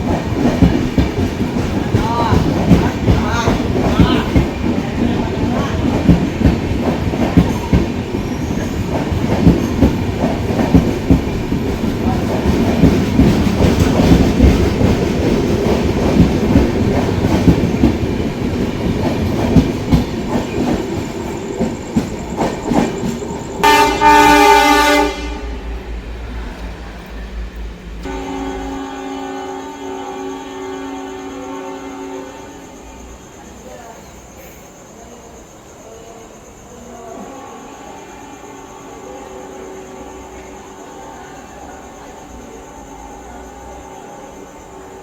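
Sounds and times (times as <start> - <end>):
train rumbling past: 0.0 - 45.0
locomotive horn blast: 23.6 - 25.7, 28.0 - 32.7.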